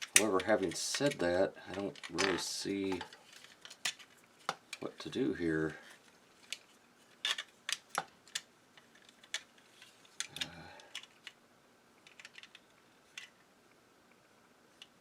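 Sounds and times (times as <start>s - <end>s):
plastic toy parts clicking: 6.4s - 11.4s, 12.0s - 13.4s.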